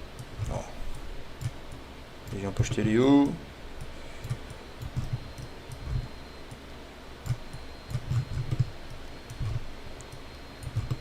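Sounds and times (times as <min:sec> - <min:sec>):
computer mouse clicks: 0:01.4 - 0:06.6, 0:07.2 - 0:11.0.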